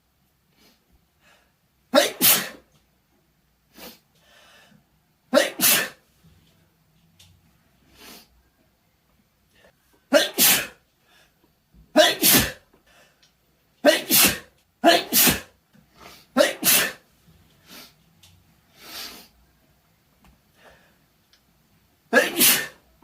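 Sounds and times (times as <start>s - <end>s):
man sneezing: 1.9s - 2.7s, 5.3s - 6.0s, 10.1s - 10.8s, 11.9s - 12.7s, 13.8s - 17.0s, 22.1s - 22.8s.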